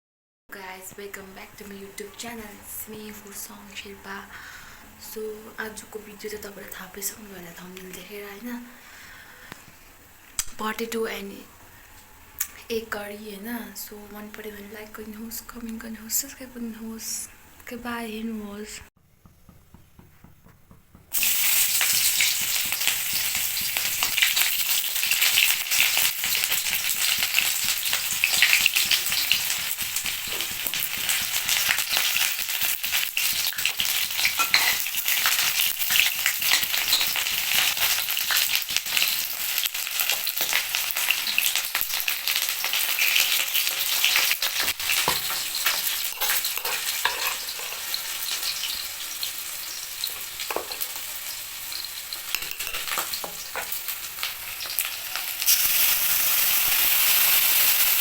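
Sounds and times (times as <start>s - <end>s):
food sizzling in hot oil: 21.1s - 58.0s.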